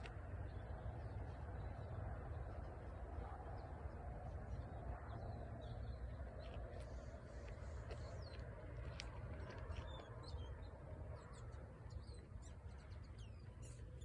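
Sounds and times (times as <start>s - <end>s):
small birds chirping: 0.0s - 14.0s
steady low rumble: 0.0s - 14.0s.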